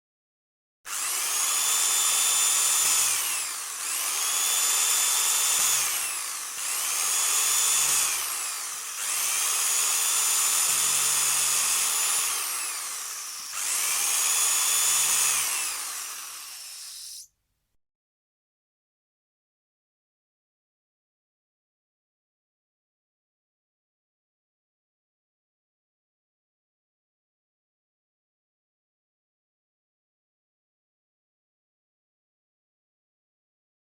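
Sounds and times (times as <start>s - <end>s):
electric drill whining: 0.9s - 17.3s.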